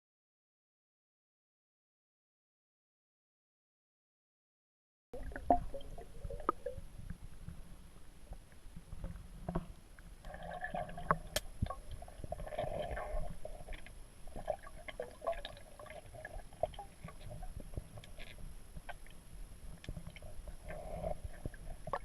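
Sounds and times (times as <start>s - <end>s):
air bubbles gurgling: 5.2s - 7.6s, 10.2s - 19.1s
low underwater rumble: 5.2s - 22.0s.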